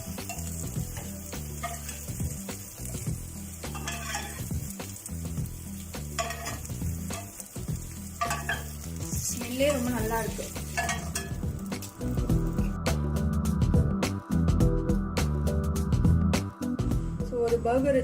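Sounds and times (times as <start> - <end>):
patties sizzling in a pan: 0.0 - 13.0
utensil scraping a pan: 3.7 - 4.7, 6.0 - 7.5, 8.1 - 8.9.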